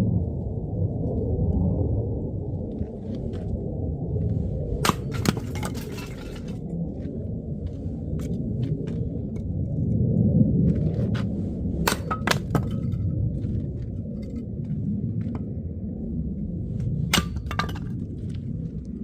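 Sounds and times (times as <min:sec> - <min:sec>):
steady low rumble: 0:00.0 - 0:19.0
firewood cracking and knocking: 0:04.8 - 0:07.1, 0:11.1 - 0:13.2, 0:17.1 - 0:18.4.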